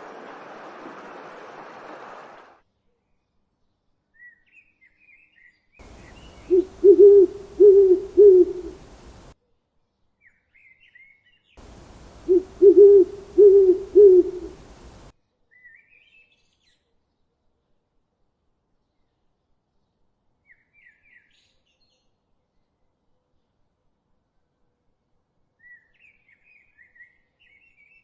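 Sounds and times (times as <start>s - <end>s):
bird hooting: 5.8s - 9.3s, 11.6s - 15.1s
small birds chirping: 5.8s - 9.3s, 11.6s - 15.1s.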